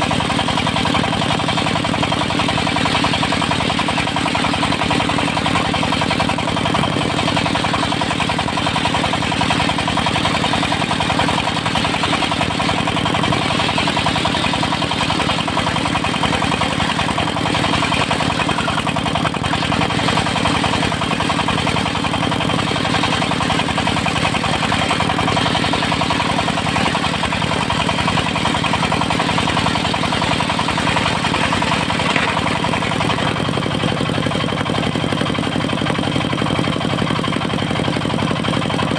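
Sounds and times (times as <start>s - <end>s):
sawmill engine running: 0.0s - 38.9s.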